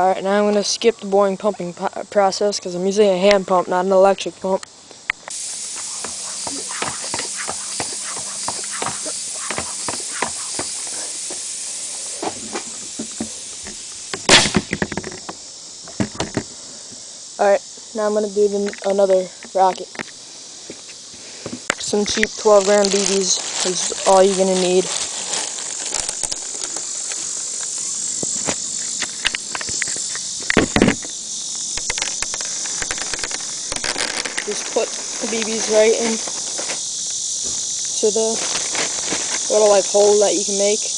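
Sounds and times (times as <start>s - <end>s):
high-pitched insect chorus: 0.0s - 40.9s
rustle: 0.0s - 40.9s
steady hiss: 0.0s - 40.9s
burst of released air: 5.2s - 14.6s.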